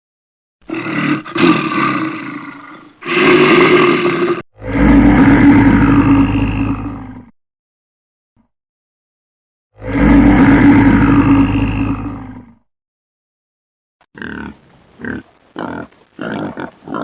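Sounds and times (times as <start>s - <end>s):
large animal roaring: 0.7s - 7.3s, 9.7s - 12.6s.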